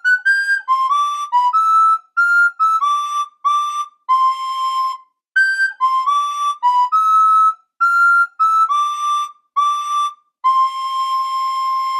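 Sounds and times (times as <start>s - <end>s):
person whistling a tune: 0.0s - 11.9s.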